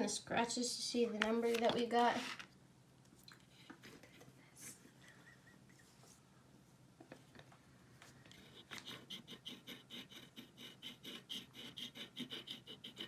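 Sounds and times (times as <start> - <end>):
scratch card being scratched: 8.4 - 13.0.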